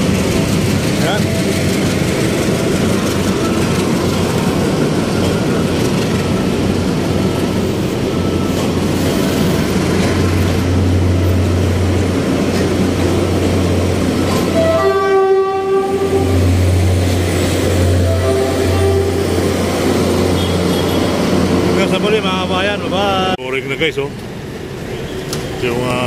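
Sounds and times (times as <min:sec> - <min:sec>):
train rumbling on rails: 0:00.0 - 0:26.0
train horn blast: 0:14.5 - 0:16.7, 0:17.6 - 0:21.2.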